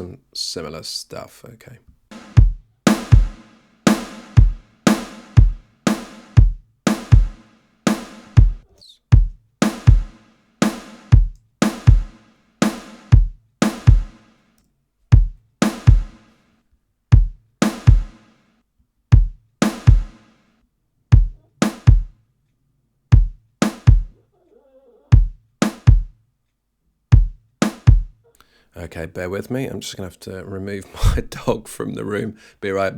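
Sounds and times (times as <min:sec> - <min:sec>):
snare hits: 0:02.1 - 0:08.6, 0:09.6 - 0:14.4, 0:15.6 - 0:16.4, 0:17.6 - 0:18.4, 0:19.6 - 0:20.4, 0:21.6 - 0:22.1, 0:23.6 - 0:24.1, 0:25.6 - 0:26.1, 0:27.6 - 0:28.1
kick drum with sub thump: 0:02.1 - 0:14.2, 0:15.1 - 0:16.2, 0:17.1 - 0:18.2, 0:19.1 - 0:20.2, 0:21.1 - 0:22.2, 0:23.1 - 0:24.2, 0:25.1 - 0:26.2, 0:27.1 - 0:28.2.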